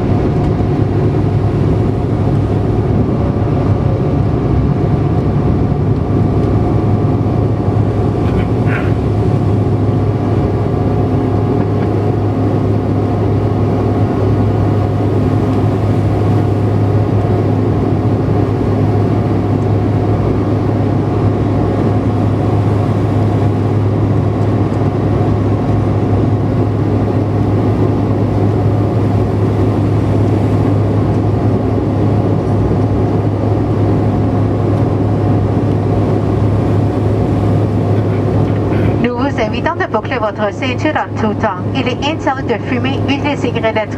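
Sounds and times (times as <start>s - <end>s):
aircraft cabin drone: 0.0s - 43.9s.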